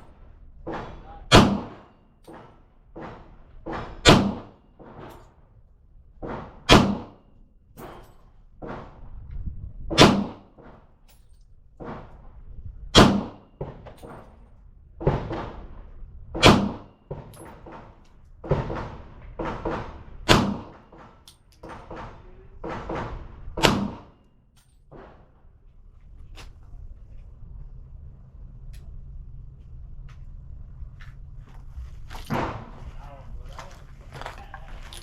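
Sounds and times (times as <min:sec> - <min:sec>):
gunshots with echo: 0:00.7 - 0:02.0, 0:03.0 - 0:04.6, 0:06.2 - 0:07.2, 0:09.9 - 0:10.5, 0:16.4 - 0:17.0, 0:18.5 - 0:21.0, 0:21.7 - 0:24.2.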